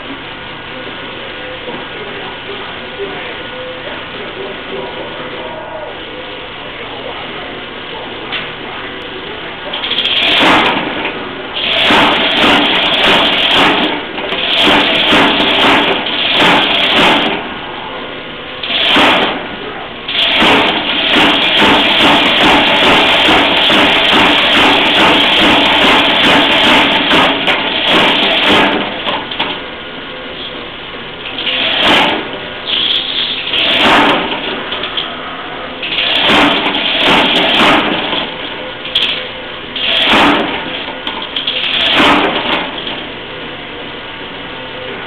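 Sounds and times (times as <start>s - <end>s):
power hammer blows: 9.9s - 17.4s, 18.6s - 19.4s, 20.1s - 29.2s, 33.5s - 34.6s, 35.9s - 38.3s, 39.8s - 40.8s, 41.6s - 42.9s.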